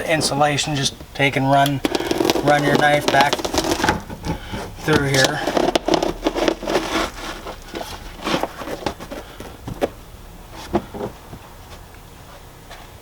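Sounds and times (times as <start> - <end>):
carpet rustling: 0.0 - 13.0
knife scraping through carpet: 4.8 - 9.0.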